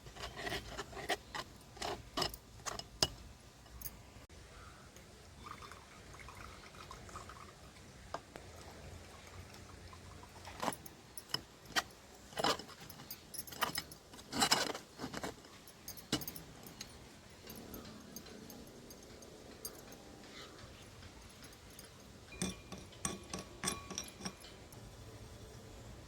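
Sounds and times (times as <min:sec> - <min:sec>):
kitchen items clinking and rattling: 0:09.6 - 0:24.8.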